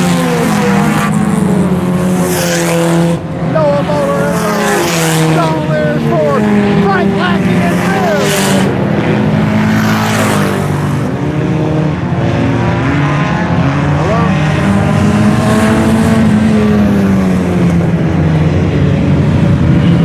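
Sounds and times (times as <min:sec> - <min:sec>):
race car engines running: 0:00.0 - 0:20.0.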